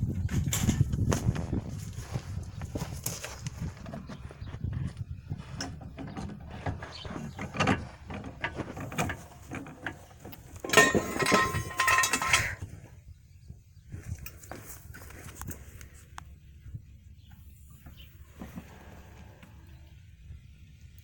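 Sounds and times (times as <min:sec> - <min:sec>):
metal tool clicks and knocks: 0:07.5 - 0:12.6.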